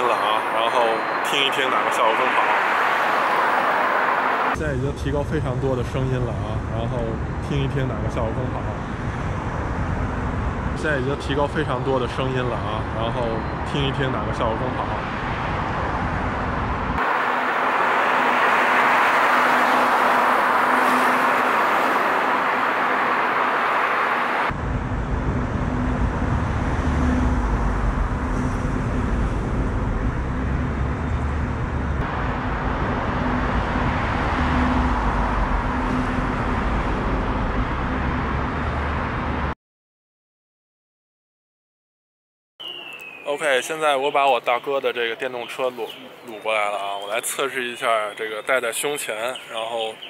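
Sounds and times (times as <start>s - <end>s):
roadside traffic noise: 0.0s - 39.6s, 42.6s - 50.0s.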